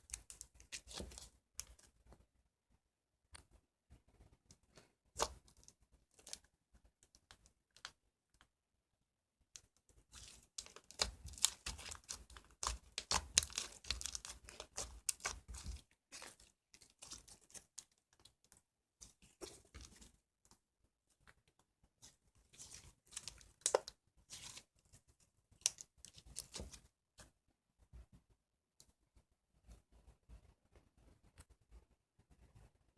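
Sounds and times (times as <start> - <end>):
slime crackling and popping: 10.1 - 17.8.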